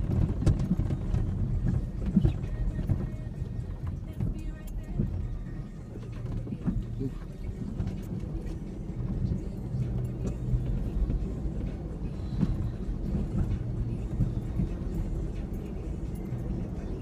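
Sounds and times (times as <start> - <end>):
truck knocks and rattles: 0.0 - 5.3
truck engine low rumble: 0.0 - 17.0.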